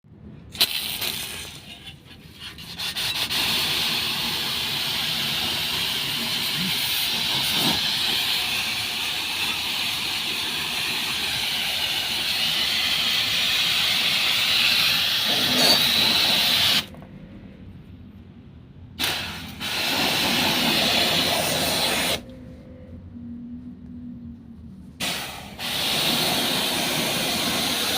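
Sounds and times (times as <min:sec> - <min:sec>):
high-pressure water spray hissing: 0:00.5 - 0:01.7, 0:02.6 - 0:16.9, 0:19.0 - 0:22.2, 0:25.0 - 0:27.9.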